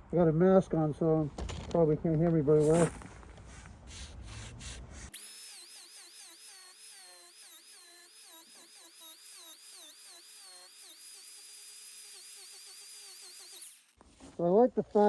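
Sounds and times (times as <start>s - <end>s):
carving wheel grinding wood: 3.5s - 14.3s.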